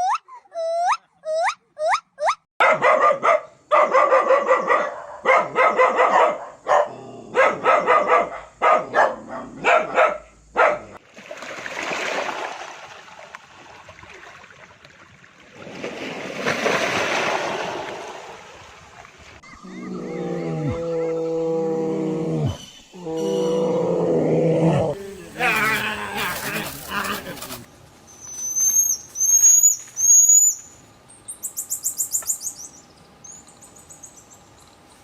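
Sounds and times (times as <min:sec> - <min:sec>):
dog barking and yipping: 0:02.6 - 0:11.0, 0:25.0 - 0:27.7.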